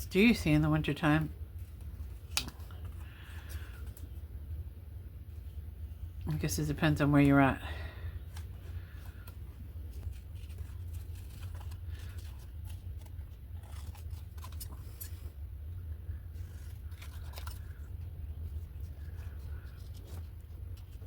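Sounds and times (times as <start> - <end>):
steady low hum: 0.0 - 21.0
scissors snipping paper: 9.1 - 15.2, 16.4 - 17.9.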